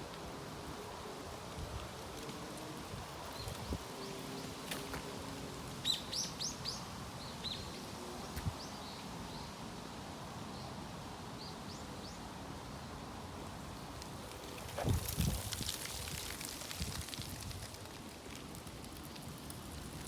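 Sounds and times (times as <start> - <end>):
small birds chirping: 2.0 - 9.6
wind hissing: 13.6 - 17.7.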